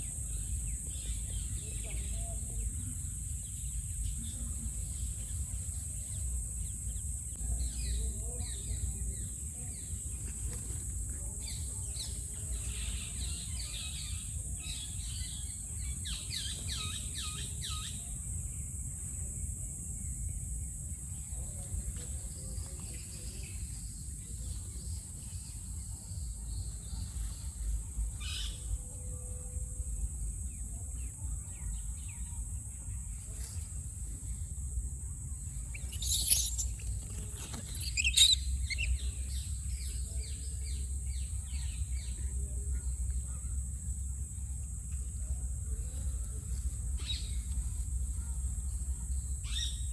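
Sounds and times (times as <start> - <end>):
high-pitched insect drone: 35.5 - 42.1
short bird chirps: 35.8 - 39.0.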